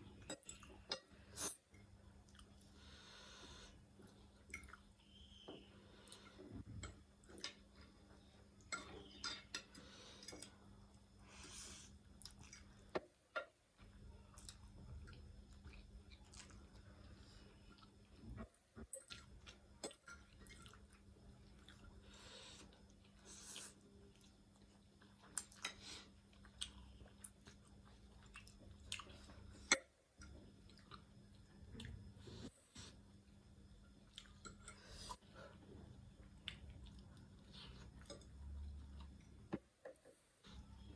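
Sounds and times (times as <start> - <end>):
chewing: 14.2 - 18.2, 22.6 - 32.5, 34.1 - 39.3.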